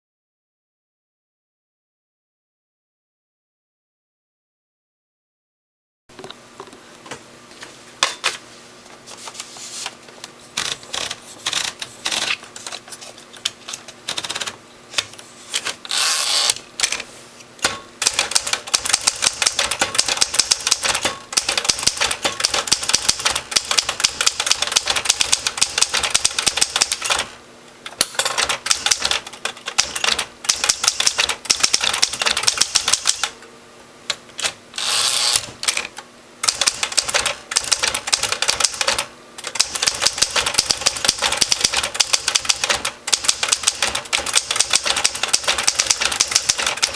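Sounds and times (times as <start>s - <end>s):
typewriter keys clacking: 13.4s - 15.7s, 18.0s - 27.2s, 28.2s - 33.3s, 36.4s - 46.9s.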